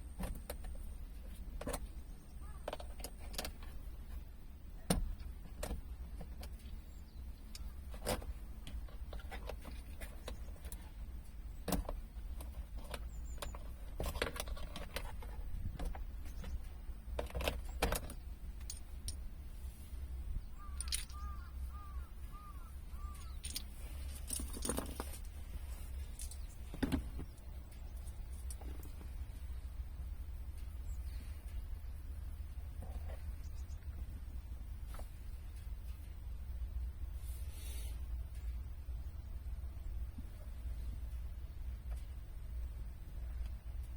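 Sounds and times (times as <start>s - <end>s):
low steady hum: 0.0s - 43.9s
tools and small parts clicking: 17.2s - 19.3s, 20.6s - 21.5s, 23.0s - 25.4s, 26.0s - 29.0s.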